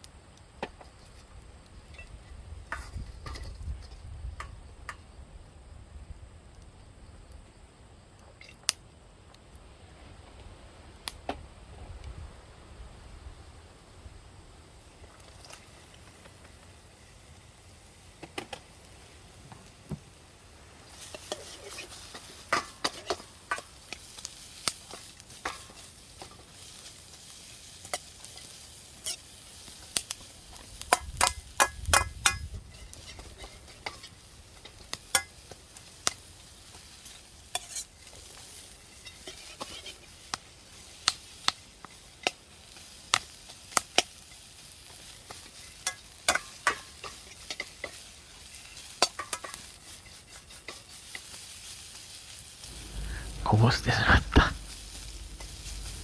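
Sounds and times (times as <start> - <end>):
vegetables sizzling in a pan: 12.9 - 56.0.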